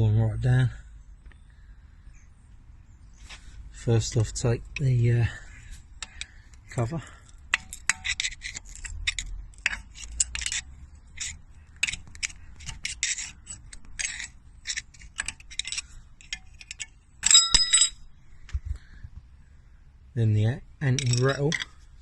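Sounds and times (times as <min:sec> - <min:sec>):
metallic clicks and scrapes: 0:03.3 - 0:18.1, 0:20.8 - 0:22.0
metal part ringing: 0:06.0 - 0:06.9, 0:07.5 - 0:18.1, 0:20.8 - 0:21.8.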